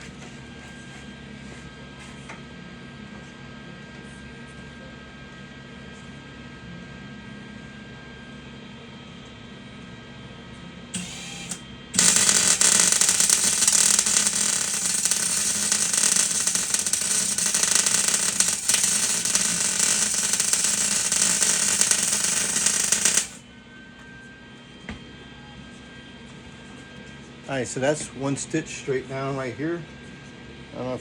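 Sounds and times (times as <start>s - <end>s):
welding arc crackling: 11.0s - 23.4s.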